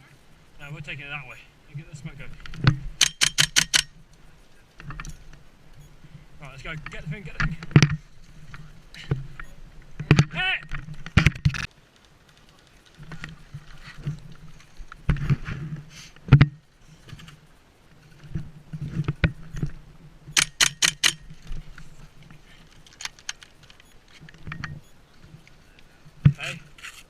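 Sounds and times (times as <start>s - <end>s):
gear rattling and knocking: 2.2s - 3.9s, 18.2s - 21.8s
sharp snaps: 3.0s - 4.2s, 20.4s - 21.2s.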